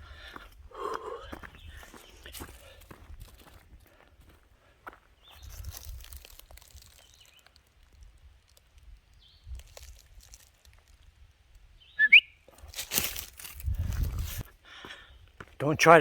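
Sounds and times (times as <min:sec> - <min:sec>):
rising bird chirp: 0:11.8 - 0:12.5
rustling scuffing noise: 0:12.6 - 0:14.5.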